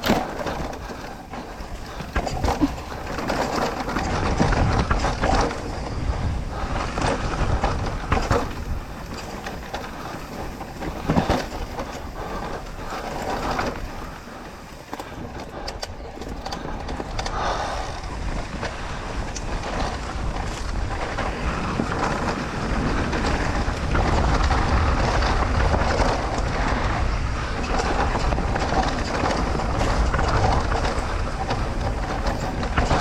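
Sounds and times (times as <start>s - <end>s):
heavy low rumble: 0.0s - 18.3s
bike rattling and clicking: 0.0s - 33.0s
bike tyres rumbling on dirt: 0.0s - 33.0s.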